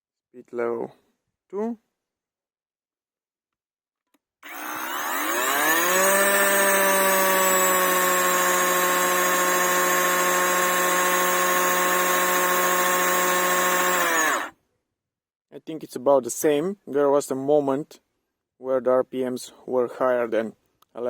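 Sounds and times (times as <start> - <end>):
chainsaw motor whining: 4.4 - 14.5.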